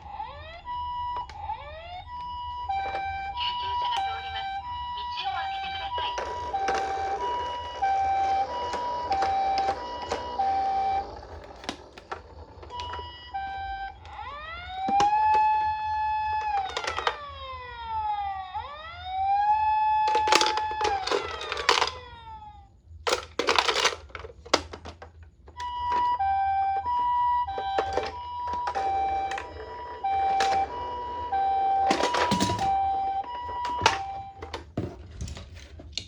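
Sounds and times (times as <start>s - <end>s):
toy siren: 0.0s - 35.0s
clicks and rattling clatter: 16.4s - 17.3s, 20.0s - 22.1s, 23.0s - 26.2s, 27.4s - 36.0s.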